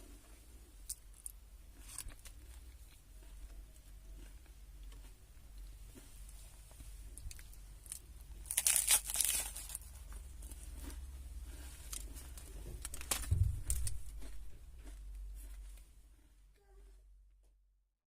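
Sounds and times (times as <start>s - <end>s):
plastic wrapper crinkling: 7.2s - 10.6s, 11.9s - 14.2s
soft low thump: 12.7s - 14.1s.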